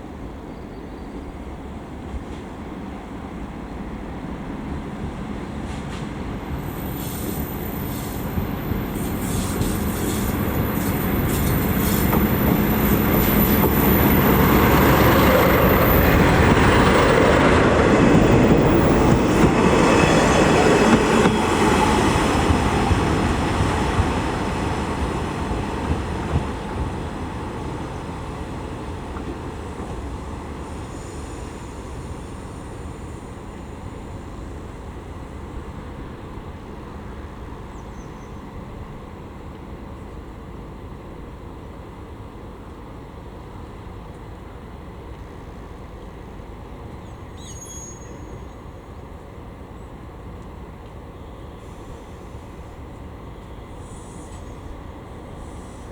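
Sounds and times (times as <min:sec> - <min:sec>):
diesel railcar passing: 0:00.0 - 0:55.9
thin high squeal: 0:47.4 - 0:48.5.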